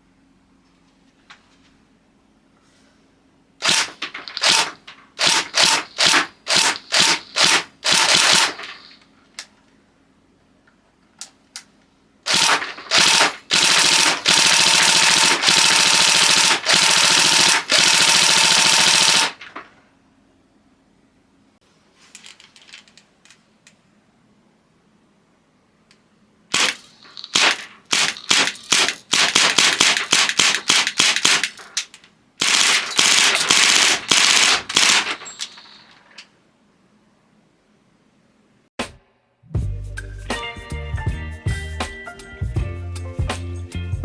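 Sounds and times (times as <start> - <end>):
airsoft gun firing: 3.6 - 9.0, 12.3 - 19.6, 26.5 - 35.8
handling rattle: 3.6 - 9.0, 12.3 - 19.8, 22.0 - 23.8, 26.5 - 36.2.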